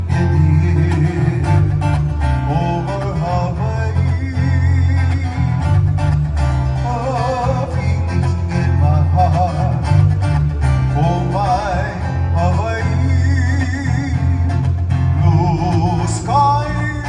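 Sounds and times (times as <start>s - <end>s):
song with acoustic guitar and bass: 0.0s - 17.0s.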